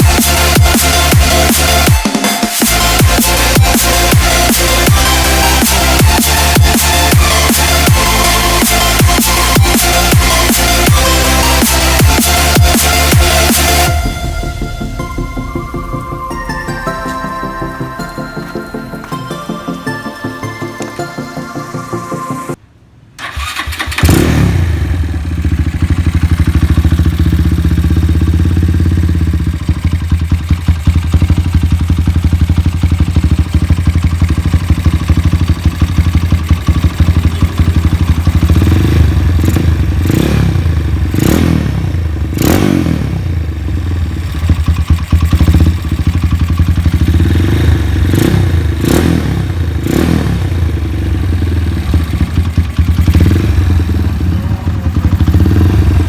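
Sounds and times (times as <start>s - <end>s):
engine throttle blips: 0.0s - 19.3s, 23.2s - 56.0s
single-cylinder engine idling: 23.2s - 56.0s.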